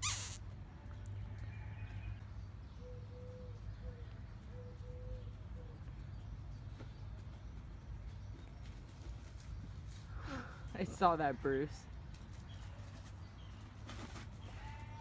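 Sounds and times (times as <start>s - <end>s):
dove cooing: 2.8s - 5.8s.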